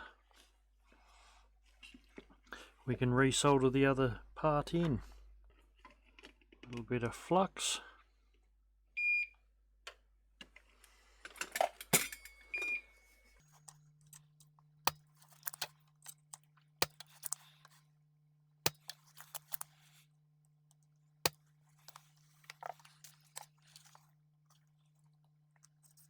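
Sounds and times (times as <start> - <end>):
small tools clinking: 11.4 - 12.8.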